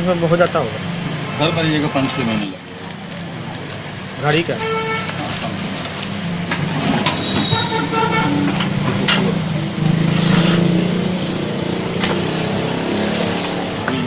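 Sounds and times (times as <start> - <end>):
vehicle engine running: 5.3 - 14.0.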